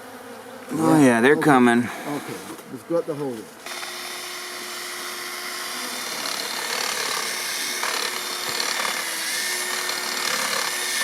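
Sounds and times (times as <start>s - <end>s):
honeybees buzzing: 0.0s - 11.0s
power tool grinding wood: 3.6s - 11.0s.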